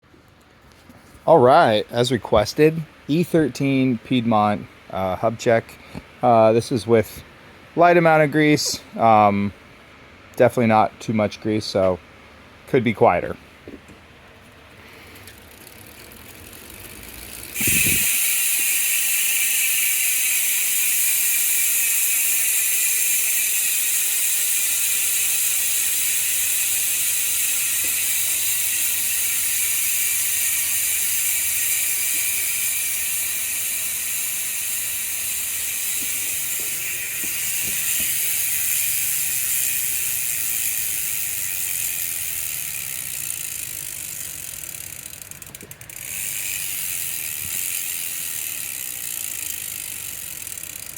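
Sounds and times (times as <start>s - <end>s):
bicycle hub pawls buzzing: 14.2s - 50.9s.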